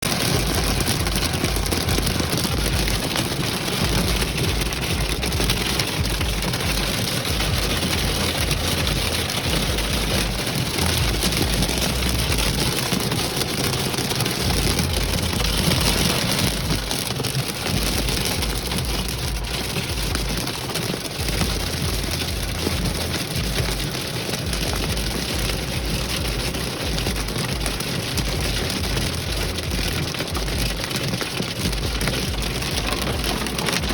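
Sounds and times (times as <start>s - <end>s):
hail and rain drumming on vehicle: 0.0s - 33.9s
low rumble: 0.1s - 23.9s, 31.6s - 33.9s.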